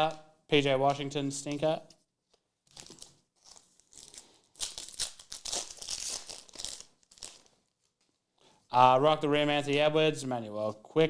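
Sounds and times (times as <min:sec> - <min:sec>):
foil wrapper crinkling and rustling: 0:02.3 - 0:08.3.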